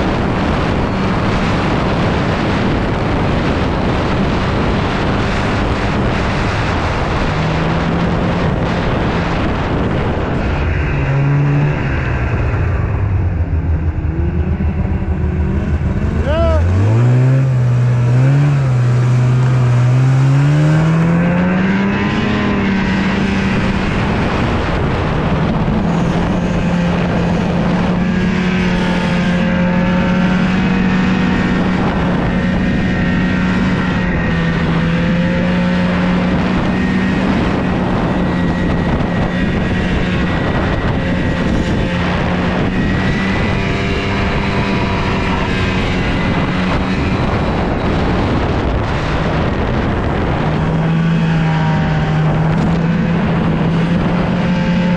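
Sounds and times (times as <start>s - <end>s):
snowmobile engine running: 0.0s - 54.9s.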